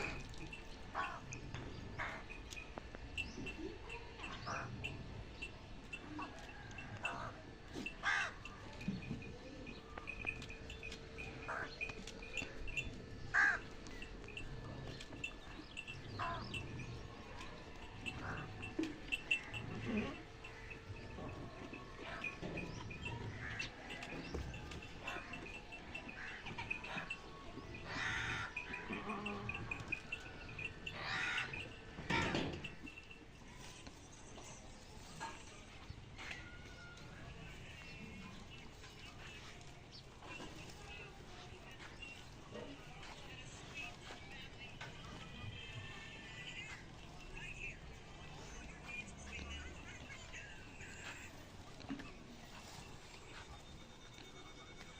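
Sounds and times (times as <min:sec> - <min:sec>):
crows cawing: 0:00.9 - 0:02.4, 0:06.2 - 0:08.7, 0:11.2 - 0:14.1, 0:16.1 - 0:16.6, 0:23.2 - 0:32.8
crow cawing: 0:08.0 - 0:08.4, 0:13.3 - 0:13.7, 0:27.8 - 0:28.9, 0:30.9 - 0:32.2.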